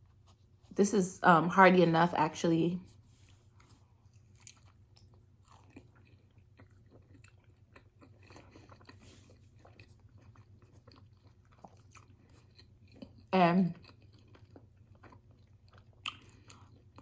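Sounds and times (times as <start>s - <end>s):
low room hum: 0.0s - 17.0s
chewing food: 3.2s - 17.0s
mouth clicks and crunches: 3.6s - 17.0s.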